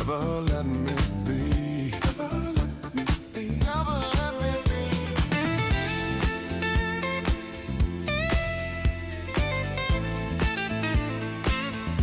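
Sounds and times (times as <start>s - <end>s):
soul-pop instrumental music: 0.0s - 12.0s
steady drum beat: 0.0s - 12.0s
electric guitar lead bending notes: 4.7s - 12.0s.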